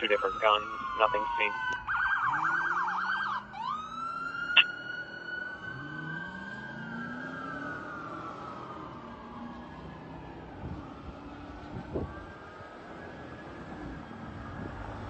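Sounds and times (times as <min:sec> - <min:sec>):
fire engine engine: 0:00.0 - 0:15.0
fire engine siren: 0:00.0 - 0:15.0.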